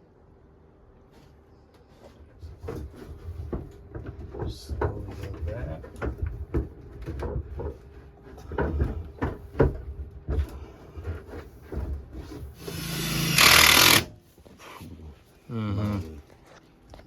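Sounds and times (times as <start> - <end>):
loud whirring: 12.6 - 14.1.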